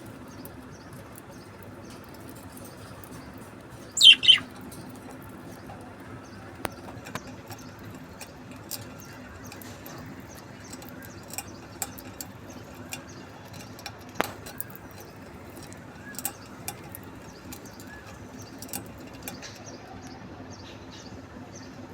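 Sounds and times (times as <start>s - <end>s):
budgerigar chirping: 4.0s - 4.5s.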